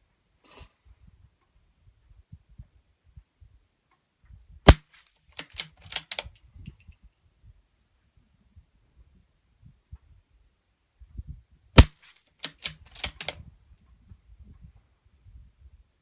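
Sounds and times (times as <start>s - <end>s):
rifle bolt clicking: 4.7s - 6.4s, 11.8s - 13.4s
suppressed rifle shot: 11.8s - 12.1s.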